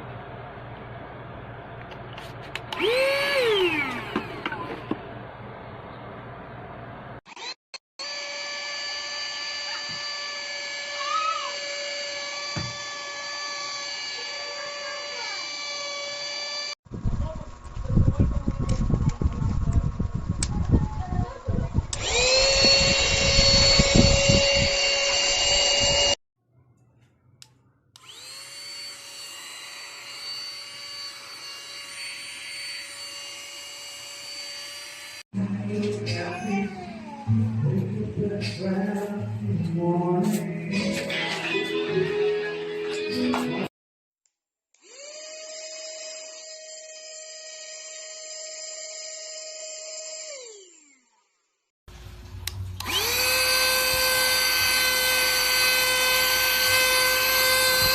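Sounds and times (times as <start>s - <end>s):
vacuum cleaner motor whine: 2.6s - 5.0s, 8.0s - 16.7s, 21.9s - 26.2s, 28.0s - 35.2s, 44.8s - 51.3s, 52.8s - 57.9s.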